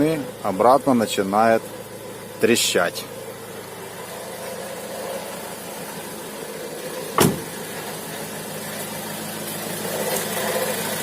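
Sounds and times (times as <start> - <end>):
crackle from engine: 0.0 - 11.0
diesel engine idling: 0.0 - 11.0.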